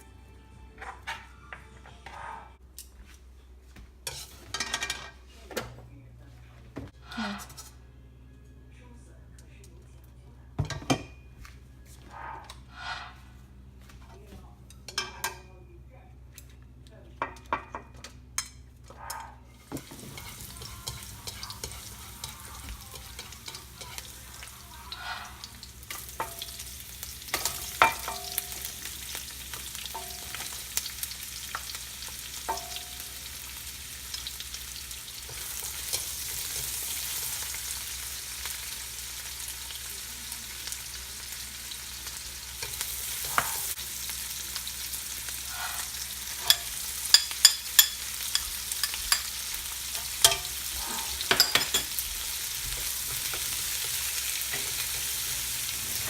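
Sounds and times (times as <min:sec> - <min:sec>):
food sizzling in a pan: 0:19.5 - 0:56.0
utensil clinking and scraping pan: 0:19.6 - 0:24.3, 0:24.9 - 0:31.8, 0:32.4 - 0:33.2, 0:35.2 - 0:37.6, 0:45.6 - 0:56.0.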